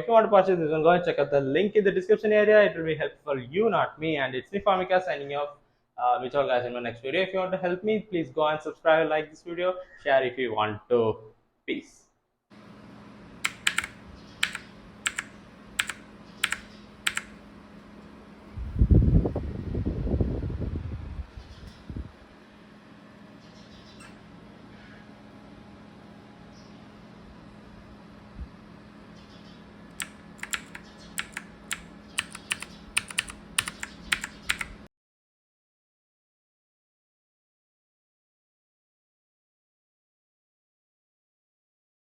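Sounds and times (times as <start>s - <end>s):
mechanical keyboard clicks: 13.4s - 17.4s, 29.9s - 34.8s.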